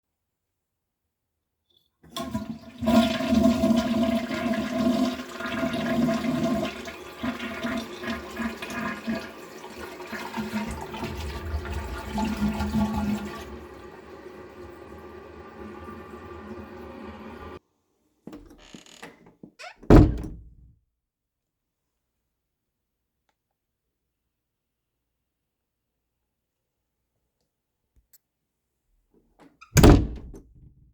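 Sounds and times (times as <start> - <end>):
toilet flushing: 2.0 - 17.6
faint hum in pipes: 10.3 - 17.6.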